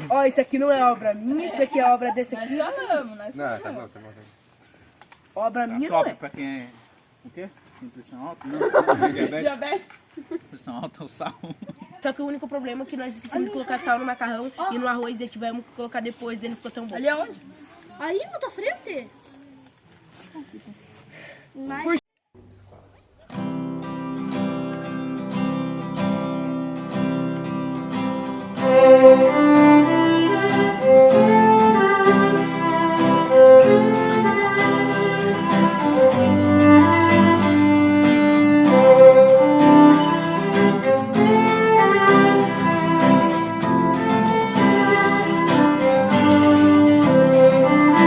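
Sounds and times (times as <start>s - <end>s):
violin and guitar music: 23.3s - 48.0s.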